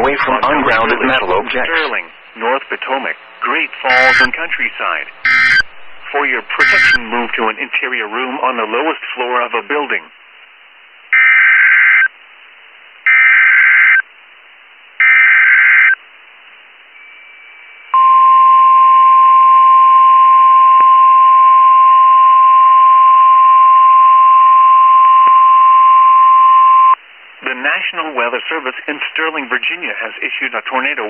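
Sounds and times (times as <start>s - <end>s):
data tone bursts: 0.0s - 7.4s, 16.9s - 27.0s
steady attention tone: 0.0s - 7.6s, 16.9s - 27.0s.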